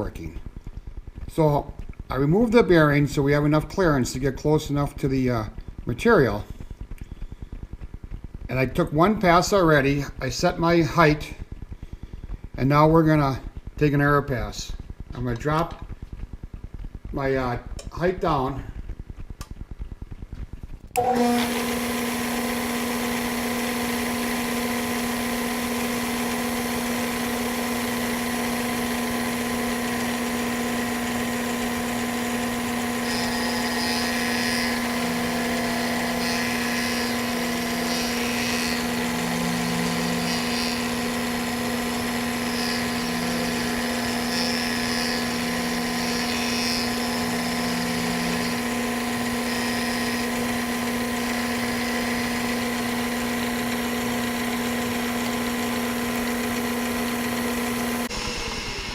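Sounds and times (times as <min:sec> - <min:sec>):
machine spindle running: 0:20.9 - 0:58.9
bit cutting metal: 0:21.0 - 0:58.9.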